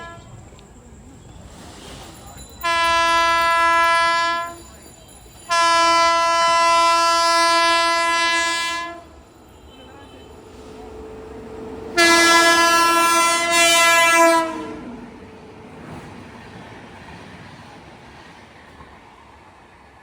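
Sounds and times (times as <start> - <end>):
locomotive horn blasts: 0.0 - 0.4, 2.6 - 4.6, 5.5 - 9.1, 11.9 - 15.0.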